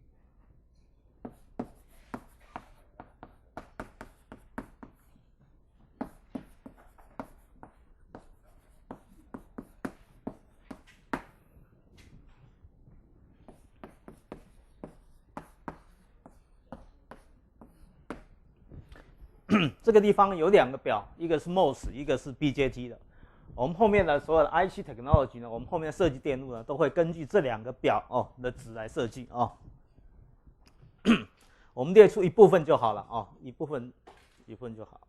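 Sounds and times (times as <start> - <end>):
pen writing on paper: 1.2 - 5.2, 5.8 - 11.4, 13.4 - 18.4.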